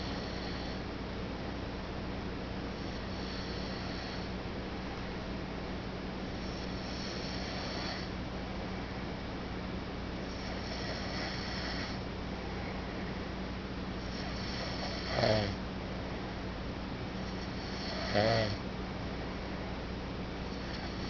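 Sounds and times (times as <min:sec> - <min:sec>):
person snoring: 0:00.0 - 0:00.8, 0:02.8 - 0:04.3, 0:06.4 - 0:08.1, 0:10.3 - 0:12.0, 0:14.1 - 0:15.6, 0:17.3 - 0:18.6
soft breath: 0:00.0 - 0:00.9, 0:02.7 - 0:04.4.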